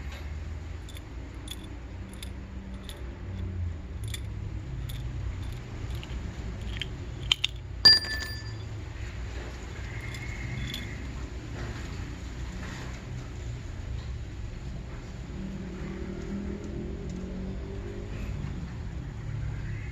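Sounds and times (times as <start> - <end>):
sharp metallic crack with ringing: 4.0 - 8.7.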